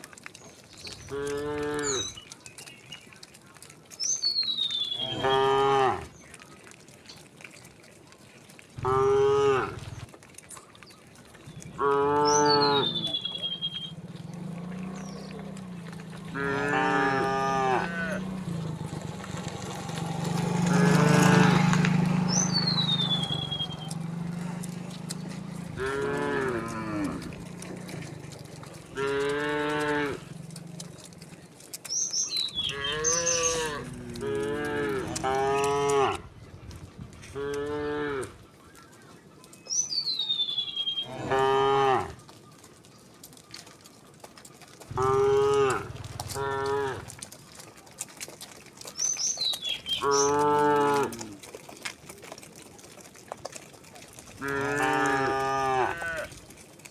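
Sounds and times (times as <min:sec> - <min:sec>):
cattle mooing: 0:01.0 - 0:02.2, 0:04.9 - 0:06.1, 0:08.8 - 0:10.1, 0:11.6 - 0:31.4, 0:32.4 - 0:36.3, 0:37.3 - 0:38.4, 0:41.0 - 0:42.2, 0:44.9 - 0:47.4, 0:49.7 - 0:51.7, 0:54.2 - 0:56.6.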